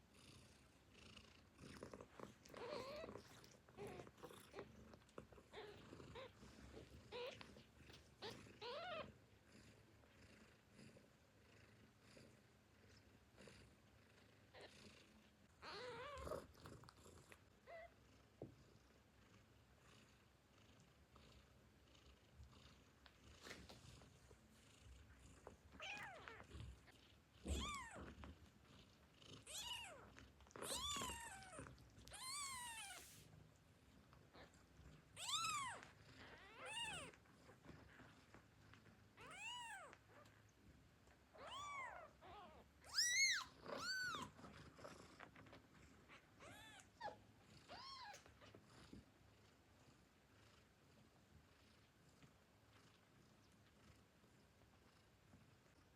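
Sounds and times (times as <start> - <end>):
newborn kittens mewing: 2.0 - 9.2, 15.6 - 16.5, 25.7 - 28.2, 29.4 - 33.1, 35.1 - 37.2, 39.1 - 40.4, 41.3 - 44.4, 46.1 - 48.6.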